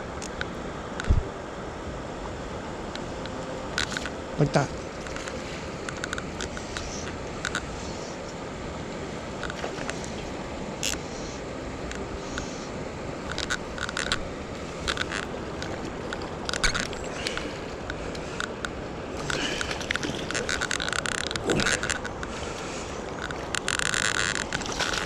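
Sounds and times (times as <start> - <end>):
river water flowing: 0.0 - 25.0.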